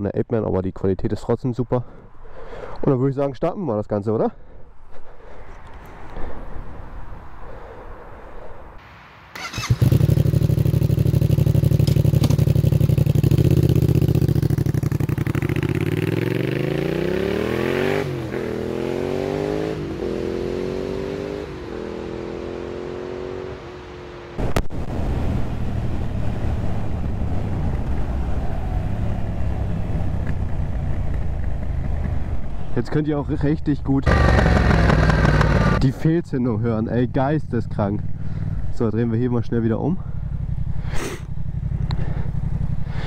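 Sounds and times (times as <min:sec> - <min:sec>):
motorcycle engine revving: 0:09.4 - 0:27.6, 0:34.0 - 0:35.9, 0:37.6 - 0:38.8, 0:40.0 - 0:43.0
exhaust backfiring: 0:09.4 - 0:32.5, 0:34.0 - 0:36.0, 0:36.7 - 0:43.0.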